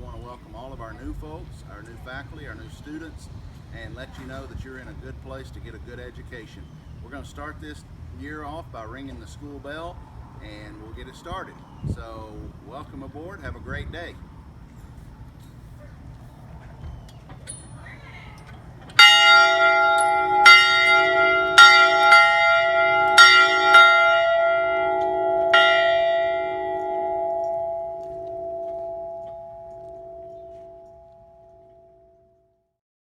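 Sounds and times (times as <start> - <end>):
school bell clanging: 17.4 - 32.5.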